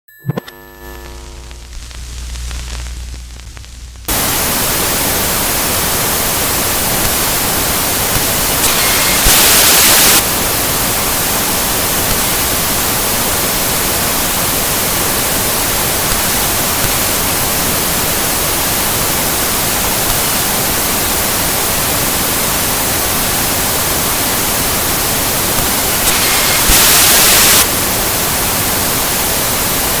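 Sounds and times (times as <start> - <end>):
low hum: 0.2 - 4.3
television static hiss: 0.6 - 30.0
harsh glitch bursts: 1.0 - 10.2, 25.3 - 27.7.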